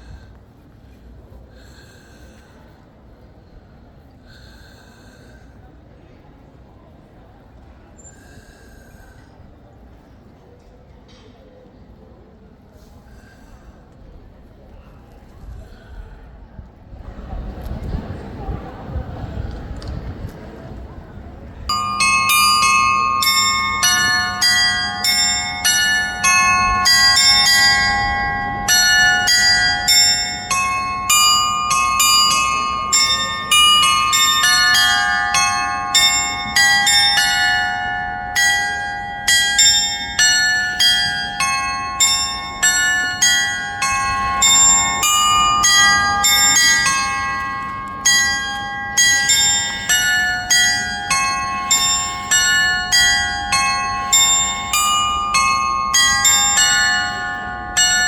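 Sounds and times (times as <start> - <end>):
church bells ringing: 21.7 - 58.0.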